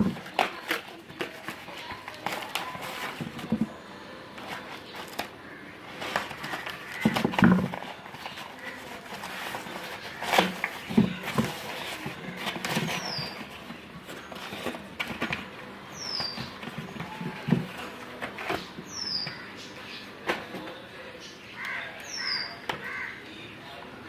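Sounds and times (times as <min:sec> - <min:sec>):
knocks and clicks of objects handled: 0:00.0 - 0:03.8, 0:04.4 - 0:15.6, 0:16.2 - 0:19.4
bird chirping: 0:15.9 - 0:17.2, 0:18.6 - 0:20.2.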